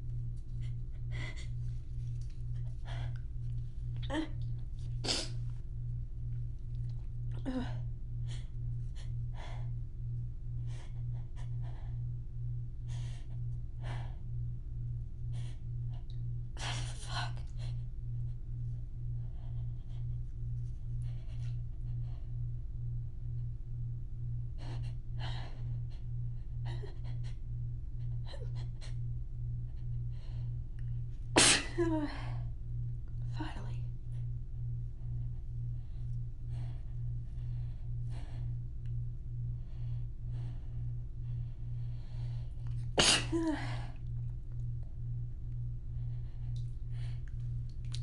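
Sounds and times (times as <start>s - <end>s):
low throbbing hum: 0.0s - 48.0s
woman breathing: 35.0s - 44.3s, 45.8s - 48.0s.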